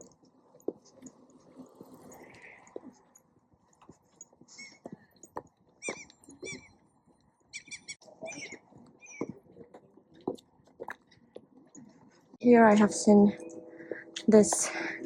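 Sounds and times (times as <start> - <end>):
birds chirping: 4.4 - 15.0.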